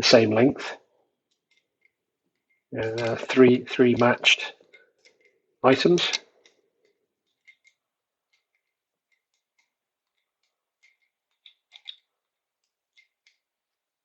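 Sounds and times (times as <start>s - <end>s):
metal parts and tools clicking: 1.2s - 13.9s.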